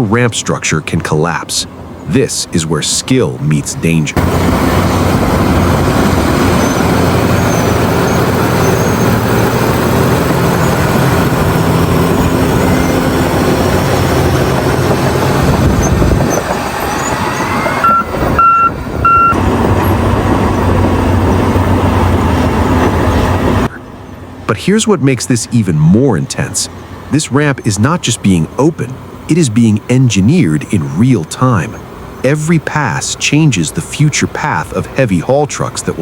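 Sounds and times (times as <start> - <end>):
bulldozer diesel engine running: 0.0 - 36.0
backup alarm beeps: 17.0 - 19.4.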